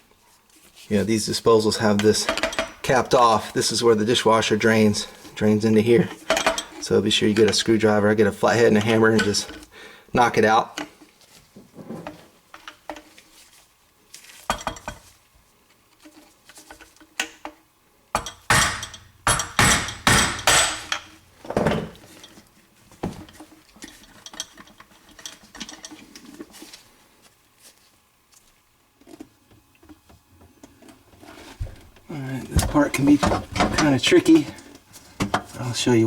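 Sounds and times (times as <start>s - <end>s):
hammer striking screwdriver: 18.2s - 21.0s.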